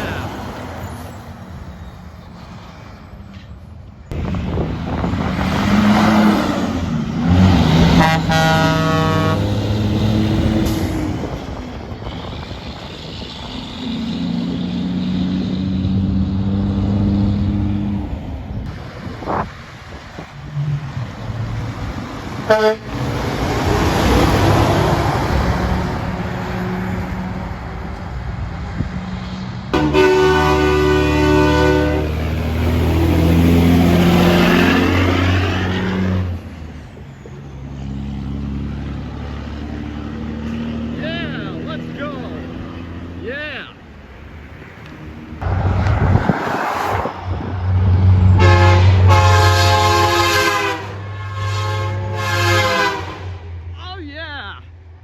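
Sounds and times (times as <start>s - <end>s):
heavy trucks passing: 0.0s - 55.0s
truck air horn chord: 7.9s - 9.6s, 22.5s - 22.9s, 29.7s - 32.2s, 48.4s - 53.4s
short horn toot: 8.0s - 9.5s, 48.4s - 53.3s.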